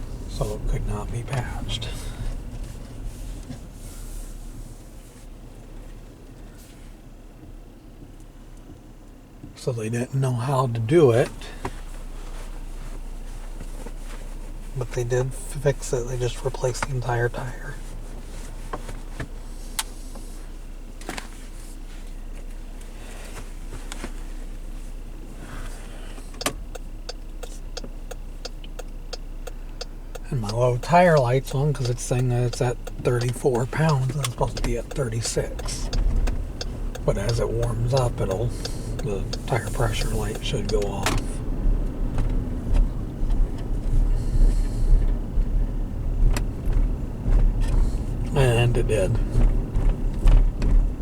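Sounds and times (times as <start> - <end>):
low vehicle interior hum: 0.0 - 51.0
road and engine rumble in car: 0.0 - 51.0
even ticking: 26.3 - 51.0
scattered clicks: 26.4 - 41.4.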